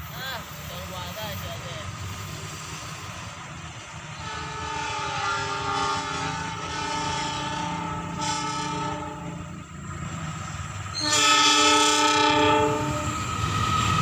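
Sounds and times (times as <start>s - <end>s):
train horn blast: 4.1s - 9.6s, 10.9s - 13.2s.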